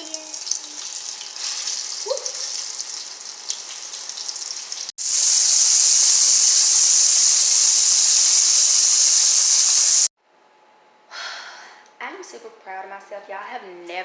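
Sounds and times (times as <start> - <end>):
cauliflower sizzling in hot oil: 0.0 - 10.1.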